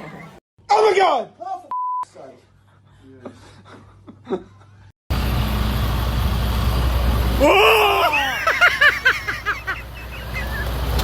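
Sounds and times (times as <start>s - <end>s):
loud low machinery rumble: 5.1s - 11.0s
person crying out and yelping: 7.4s - 9.4s.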